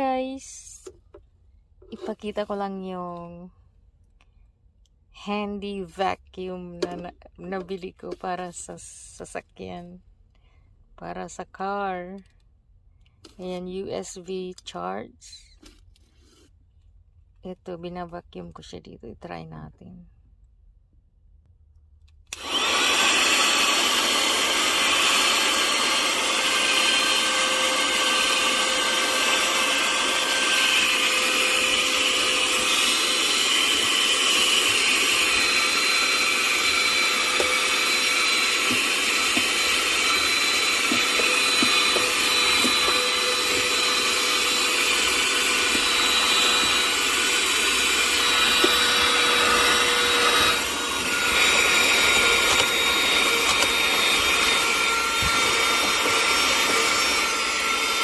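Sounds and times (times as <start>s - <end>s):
handheld vacuum cleaner whine: 22.3s - 58.0s.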